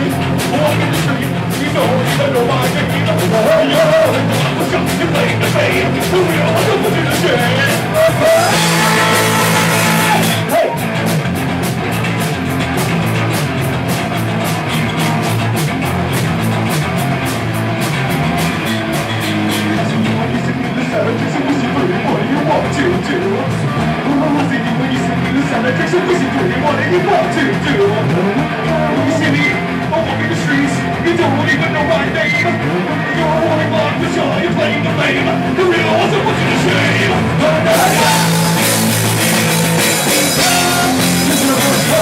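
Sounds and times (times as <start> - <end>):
person singing: 0.0 - 10.8, 20.0 - 42.0
bass guitar: 0.0 - 42.0
distorted electric guitars: 0.0 - 42.0
fast drumming: 0.0 - 42.0.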